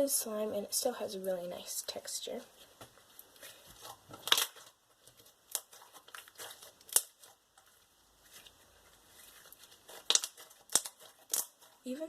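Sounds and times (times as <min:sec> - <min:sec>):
slime squished by hand: 0:03.4 - 0:11.8.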